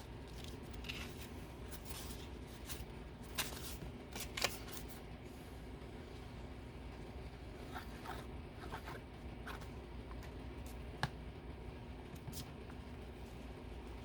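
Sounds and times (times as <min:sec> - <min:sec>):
paper rustling: 0:00.2 - 0:05.0.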